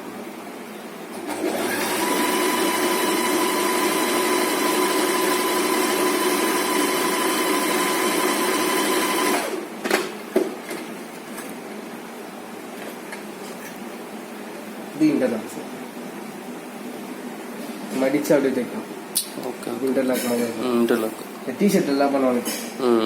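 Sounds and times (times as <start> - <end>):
electric sewing machine running: 1.2 - 9.6.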